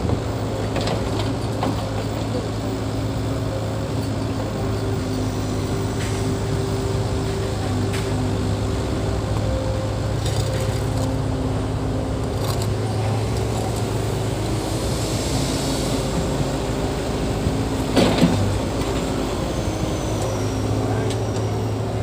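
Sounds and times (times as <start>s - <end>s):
heavy diesel engine running: 0.0s - 22.0s.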